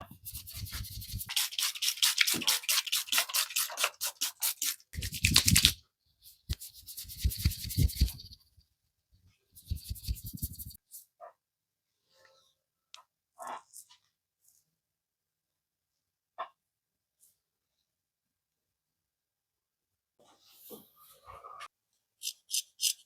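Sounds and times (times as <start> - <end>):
rubbing strokes over hair and skin: 0.1 - 5.7, 6.3 - 8.4, 9.6 - 10.8.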